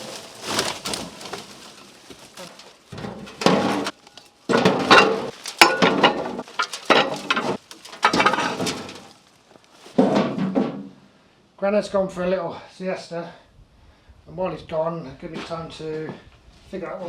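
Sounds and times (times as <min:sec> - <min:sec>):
metal parts clattering: 0:00.0 - 0:09.1.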